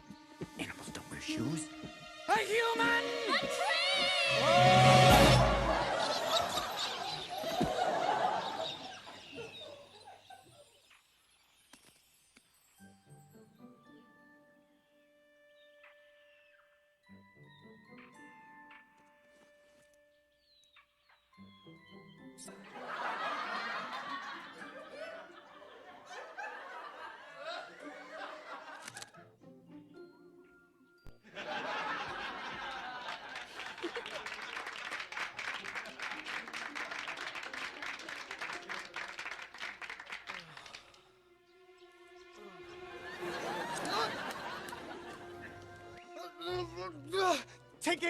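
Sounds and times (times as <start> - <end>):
orchestral film music: 0.0 - 9.7, 12.5 - 34.6, 40.9 - 48.0
canned audience laughter: 4.9 - 10.6, 22.7 - 29.2, 31.2 - 39.1, 42.5 - 46.0.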